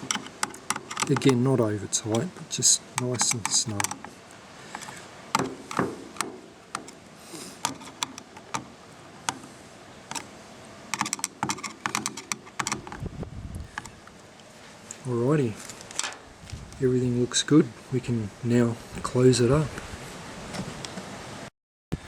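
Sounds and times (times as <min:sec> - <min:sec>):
screwdriver clicking on screws: 0:00.0 - 0:01.5, 0:03.0 - 0:04.1.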